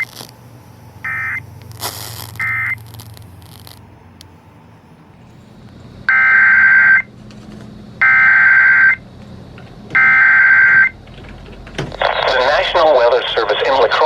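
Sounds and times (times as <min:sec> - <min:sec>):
digital data tone bursts: 0:00.0 - 0:00.3, 0:01.0 - 0:03.8.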